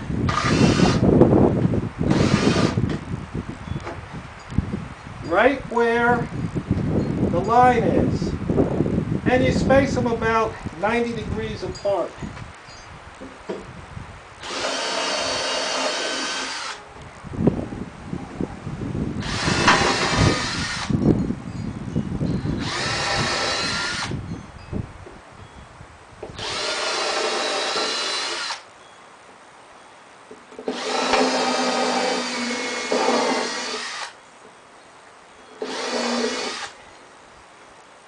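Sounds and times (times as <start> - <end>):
cordless drill boring into wood: 0.3 - 1.0, 2.1 - 2.8, 14.4 - 16.8, 19.2 - 20.9, 22.6 - 24.1, 26.4 - 28.6, 30.7 - 34.2, 35.6 - 36.8.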